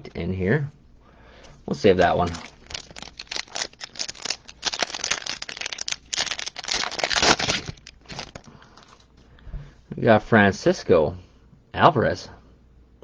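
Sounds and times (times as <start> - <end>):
foil wrapper crinkling: 1.7 - 9.1.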